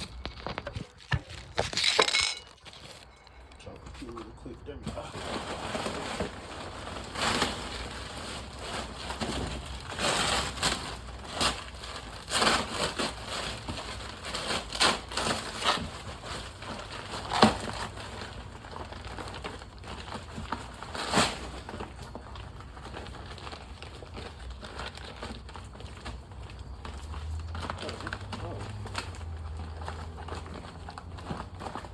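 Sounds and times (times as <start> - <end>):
packing material rustling: 0.0 - 31.9.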